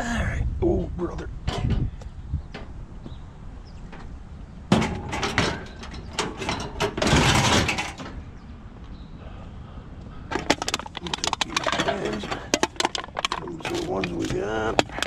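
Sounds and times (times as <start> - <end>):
scrap cans knocking and rattling: 4.7 - 8.1, 10.3 - 15.0.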